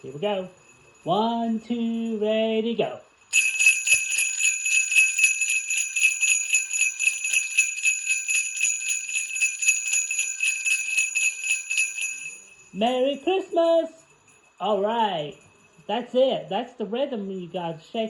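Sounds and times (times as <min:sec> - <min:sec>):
sleigh bells jingling: 0:00.0 - 0:02.4, 0:03.2 - 0:17.6.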